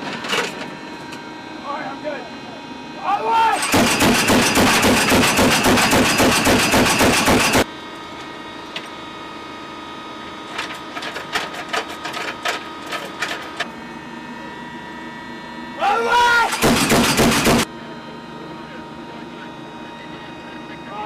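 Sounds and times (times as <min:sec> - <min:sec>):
chain gun firing burst: 0:03.6 - 0:07.6, 0:16.5 - 0:17.6
steady hum: 0:12.0 - 0:21.0.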